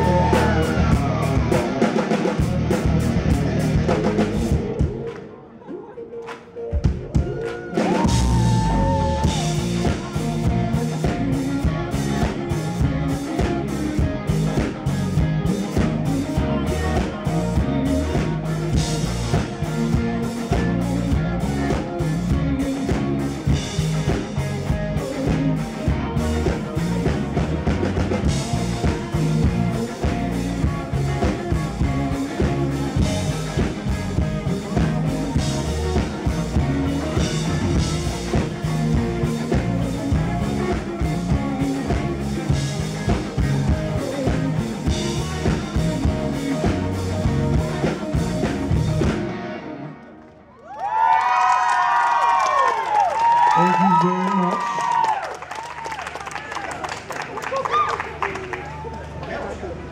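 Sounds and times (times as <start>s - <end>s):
drum kit steady beat: 0.0s - 5.2s, 6.7s - 49.3s
live rock band playing: 0.0s - 5.4s, 6.6s - 50.4s.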